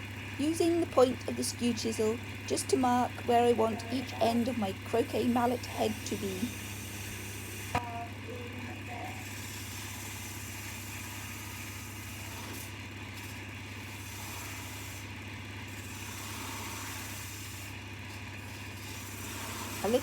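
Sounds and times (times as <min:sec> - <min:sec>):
wood lathe motor hum: 0:00.0 - 0:20.0
tool hissing cutting wood: 0:05.4 - 0:07.8, 0:13.8 - 0:17.8, 0:18.6 - 0:20.0.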